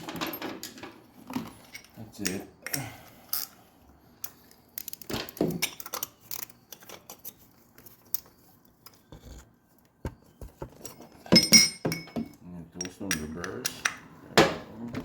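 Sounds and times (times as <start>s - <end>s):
metal tools clicking and knocking: 10.8s - 14.1s
ringing metallic clinks: 11.4s - 13.4s.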